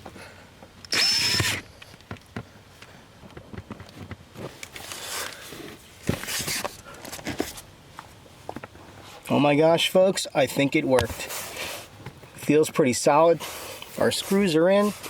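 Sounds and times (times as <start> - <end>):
power screwdriver whine: 0.9 - 1.7.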